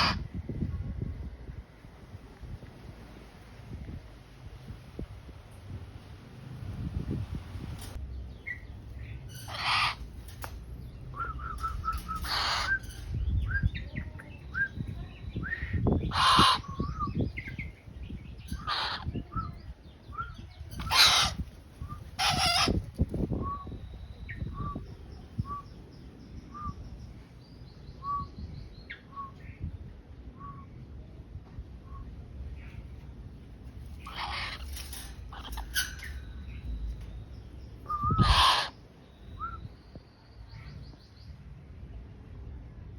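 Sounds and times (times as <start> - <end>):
short bird calls: 37.8 - 39.7.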